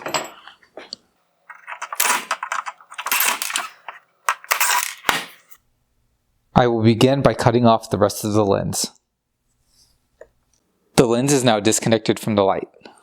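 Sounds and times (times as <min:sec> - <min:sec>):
plastic and metal parts clattering: 0:00.0 - 0:00.6, 0:01.5 - 0:05.6.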